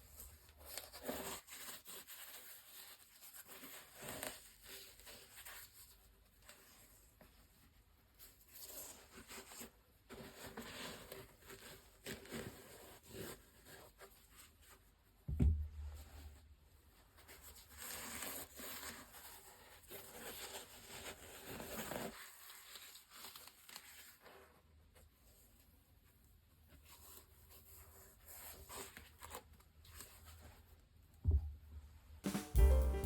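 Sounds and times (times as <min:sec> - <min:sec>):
dull thump: 0:15.3 - 0:16.0.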